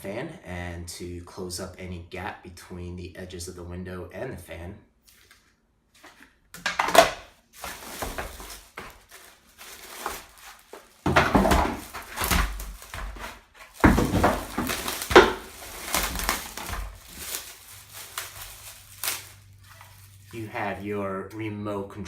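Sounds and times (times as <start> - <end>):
plastic and cardboard crinkling: 5.1 - 20.9.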